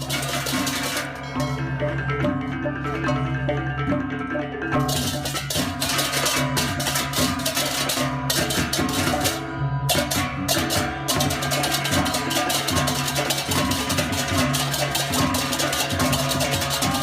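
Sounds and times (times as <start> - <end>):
percussion-heavy music: 0.0 - 17.0.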